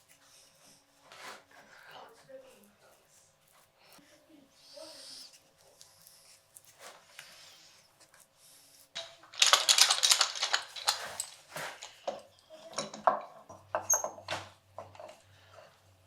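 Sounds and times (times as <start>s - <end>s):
small hard parts clicking and rattling: 9.0s - 15.8s.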